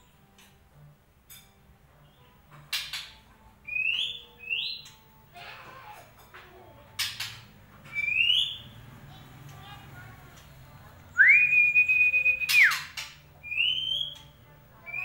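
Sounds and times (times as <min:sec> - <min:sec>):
bird whistling song: 0:03.6 - 0:05.0, 0:07.8 - 0:08.8, 0:11.1 - 0:15.0
sharp bird clicking notes: 0:12.3 - 0:13.2.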